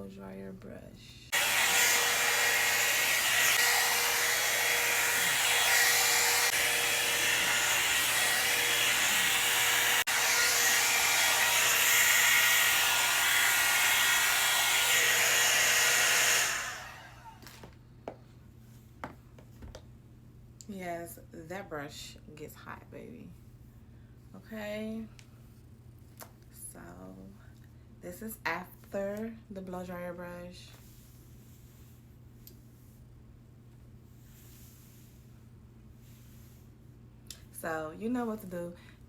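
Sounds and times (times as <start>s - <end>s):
hot air brush whirring: 1.3s - 17.7s.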